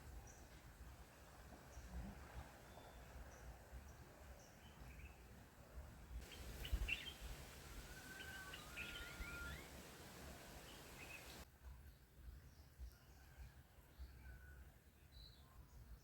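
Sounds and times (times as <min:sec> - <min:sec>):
faint birdsong chirps: 0:01.7 - 0:11.4.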